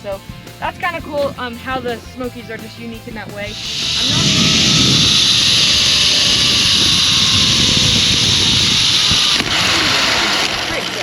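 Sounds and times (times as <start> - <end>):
wind buffeting microphone: 3.2 - 10.9
zip line pulley hissing on cable: 3.5 - 11.0.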